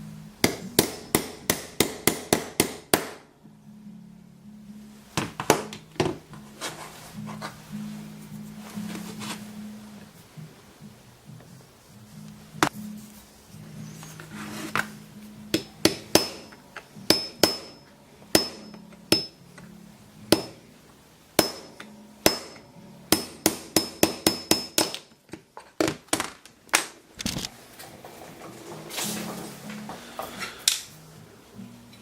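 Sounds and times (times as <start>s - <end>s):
faint background music: 0.0s - 32.0s
hammer striking metal punch: 0.4s - 3.3s, 15.5s - 19.4s, 20.3s - 20.6s, 21.4s - 25.1s.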